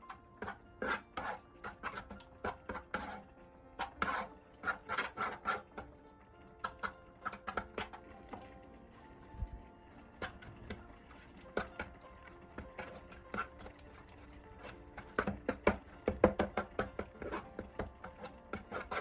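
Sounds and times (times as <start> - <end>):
soft background music: 0.0 - 19.0
utensils tapping on dishes: 6.6 - 8.5, 10.2 - 13.8, 14.6 - 19.0.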